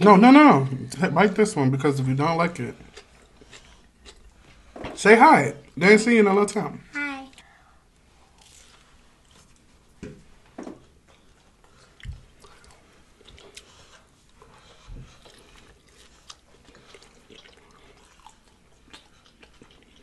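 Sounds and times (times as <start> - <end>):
person chewing food: 2.7 - 4.9, 7.3 - 10.0, 10.8 - 20.0.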